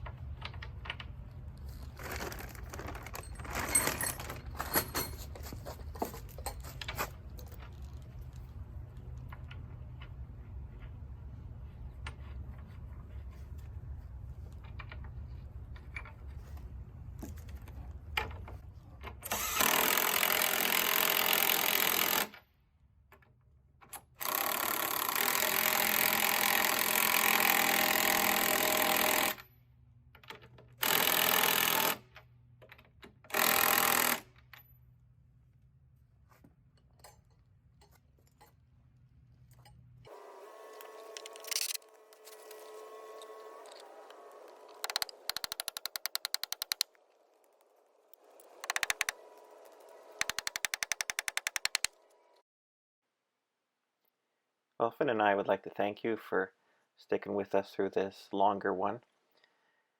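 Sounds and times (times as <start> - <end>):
handheld power tool running: 40.1 - 46.9, 48.2 - 52.0.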